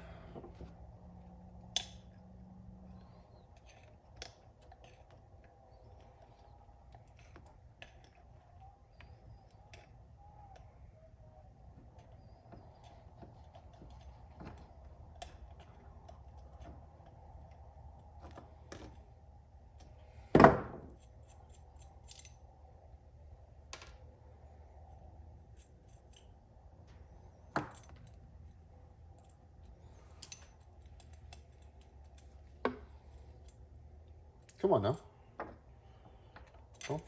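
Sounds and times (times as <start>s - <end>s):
hand tools clinking on metal: 29.1s - 33.7s, 36.2s - 37.0s.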